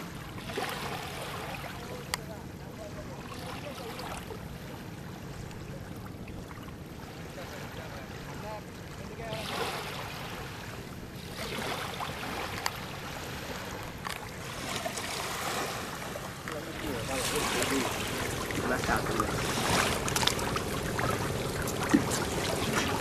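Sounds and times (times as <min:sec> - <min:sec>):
rushing splashing water: 0:07.3 - 0:23.0
low hum: 0:13.7 - 0:23.0
faint voices: 0:16.4 - 0:23.0.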